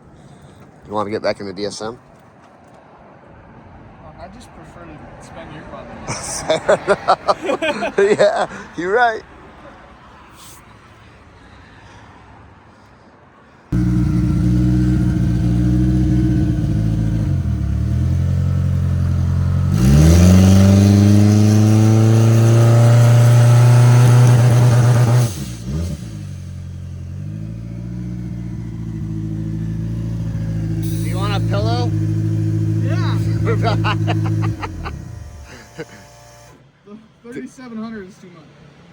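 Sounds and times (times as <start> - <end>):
race car engine revving: 13.8 - 36.6.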